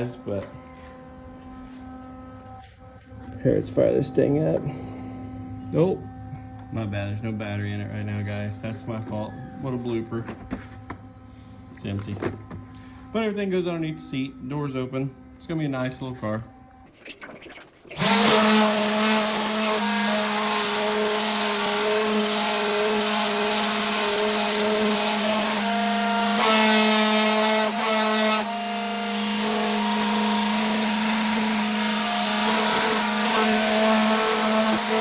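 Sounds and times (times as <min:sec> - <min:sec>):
motor humming steadily: 0:18.0 - 0:35.0.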